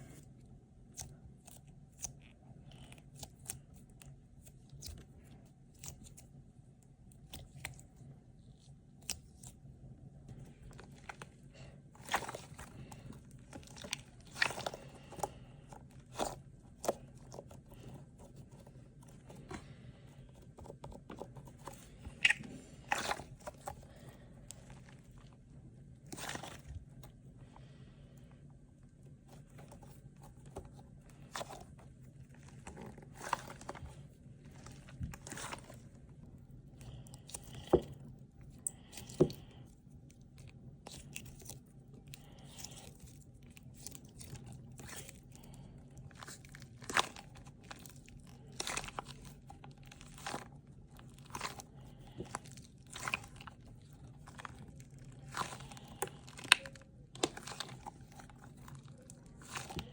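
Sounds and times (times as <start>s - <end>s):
low steady hum: 0.0s - 59.9s
packaging crinkling and rustling: 42.2s - 59.9s.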